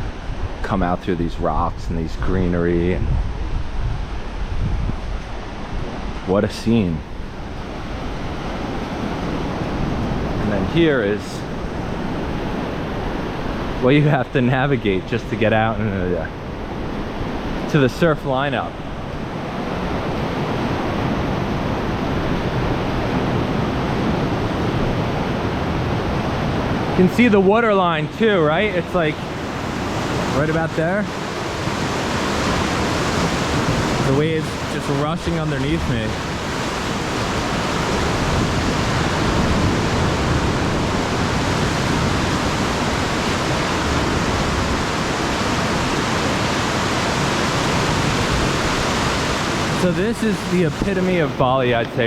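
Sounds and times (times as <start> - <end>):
ocean surf over rocks: 0.0 - 52.0.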